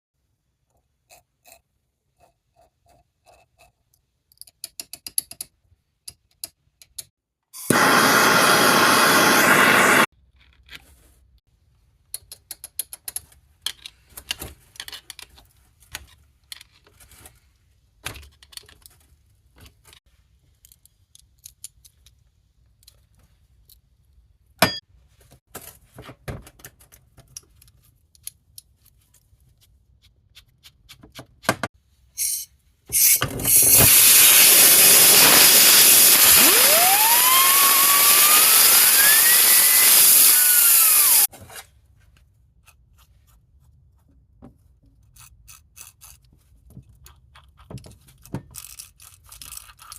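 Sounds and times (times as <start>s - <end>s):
metal parts clicking and tapping: 4.3s - 7.1s, 12.1s - 16.9s, 19.8s - 23.8s
power tool whining on metal: 7.6s - 10.1s, 33.5s - 41.3s.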